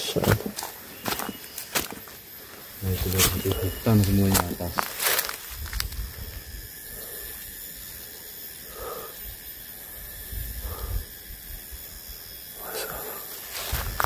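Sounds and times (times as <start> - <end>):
footsteps on forest path: 0.0 - 6.5, 13.4 - 14.0
high-pitched insect drone: 0.0 - 14.0
person breathing: 6.0 - 11.3, 12.6 - 13.4.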